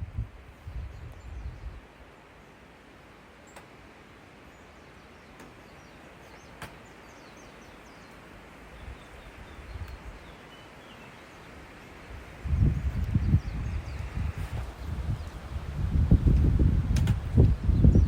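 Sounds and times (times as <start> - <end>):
low rumbling gusts: 0.0 - 1.8, 11.6 - 18.0
wind: 0.0 - 18.0
small birds chirping: 4.4 - 18.0.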